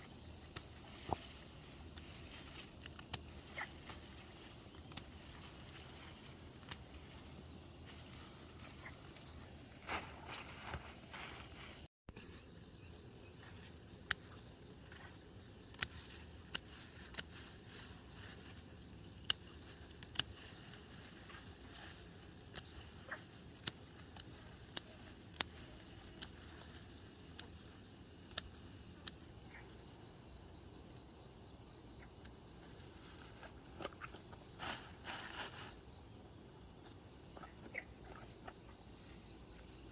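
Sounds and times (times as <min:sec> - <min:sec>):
pulsing insect trill: 0:00.0 - 0:11.5
insects chorus: 0:00.0 - 0:39.9.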